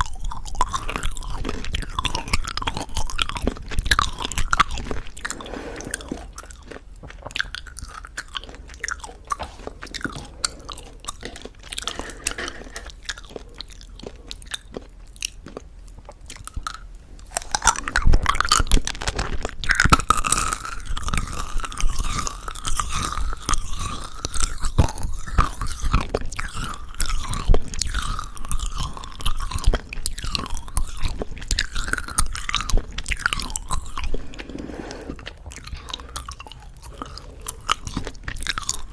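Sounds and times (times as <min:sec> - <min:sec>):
chewing candy close up: 0:00.0 - 0:38.9
wet mouth clicks and smacks: 0:16.4 - 0:18.8.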